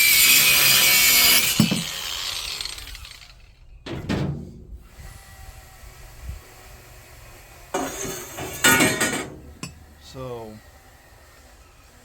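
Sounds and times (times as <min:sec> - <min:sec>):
power tool motor winding down: 0:00.0 - 0:03.6, 0:09.8 - 0:12.0
metal piece clattering: 0:07.8 - 0:09.8.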